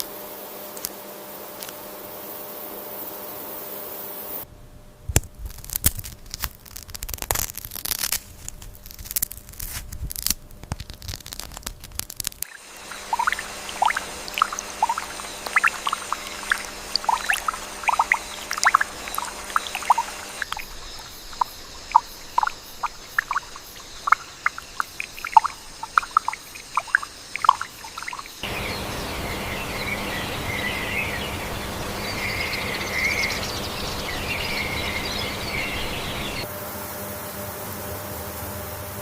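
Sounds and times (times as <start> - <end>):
chirping insects: 0.0 - 4.4, 12.4 - 39.0
irregular short dripping ticks: 10.2 - 28.6
steady hiss: 10.8 - 39.0.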